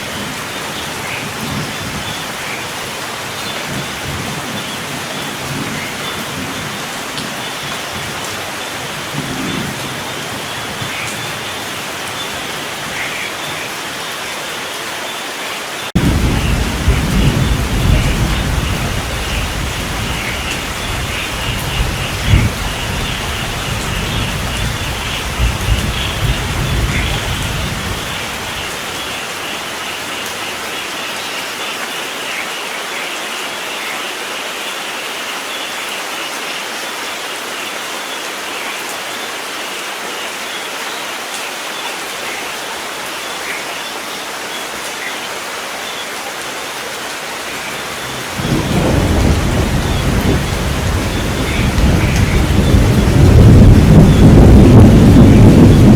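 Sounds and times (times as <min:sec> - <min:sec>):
steady rain: 0:00.0 - 0:55.9
thunder rumbling: 0:16.0 - 0:29.7, 0:47.2 - 0:55.9.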